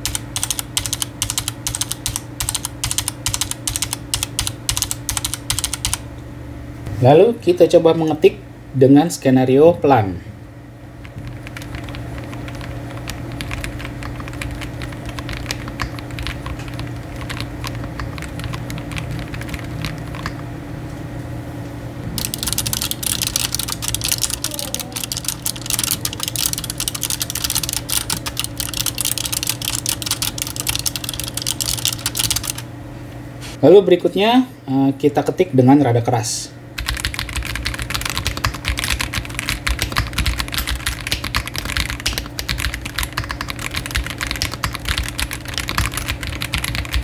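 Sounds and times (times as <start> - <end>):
sharp keyboard clicking: 0.0 - 6.0, 11.0 - 20.4, 22.2 - 32.6, 36.8 - 47.0
steady low hum: 0.0 - 47.0
soft keyboard clatter: 11.1 - 20.4.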